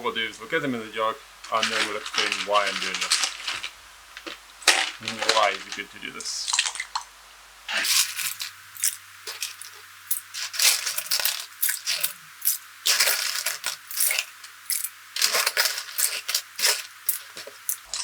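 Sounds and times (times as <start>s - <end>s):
plastic keycaps clattering: 1.5s - 5.8s, 7.8s - 17.9s.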